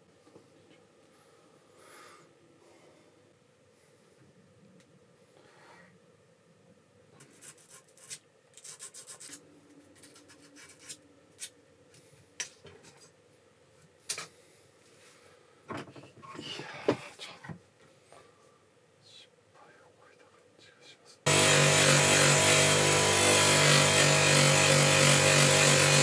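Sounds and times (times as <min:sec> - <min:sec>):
filing scraping strokes on knife: 0:07.2 - 0:09.4, 0:10.0 - 0:11.5.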